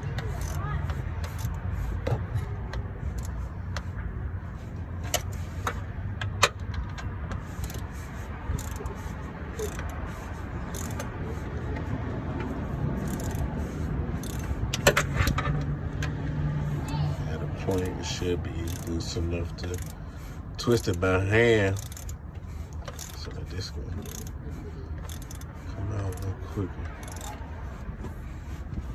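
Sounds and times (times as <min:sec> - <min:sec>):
wrench clinking against metal: 0:00.0 - 0:03.5, 0:05.0 - 0:11.1, 0:13.0 - 0:15.4, 0:17.6 - 0:27.5.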